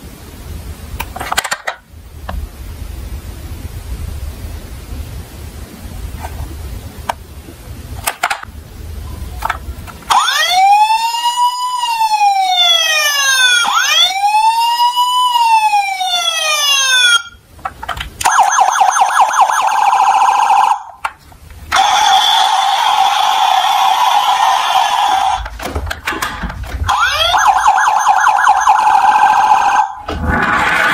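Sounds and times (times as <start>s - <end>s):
wailing siren: 10.1s - 17.4s, 18.2s - 21.0s, 21.7s - 25.5s, 26.9s - 30.9s
pulsing siren tone: 18.2s - 21.0s, 26.9s - 30.9s.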